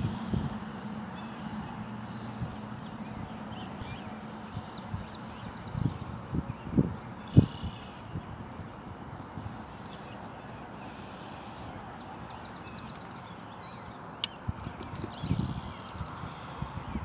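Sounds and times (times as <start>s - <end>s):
small songbirds chirping: 0.0s - 17.0s
steady outdoor hiss: 0.0s - 17.0s.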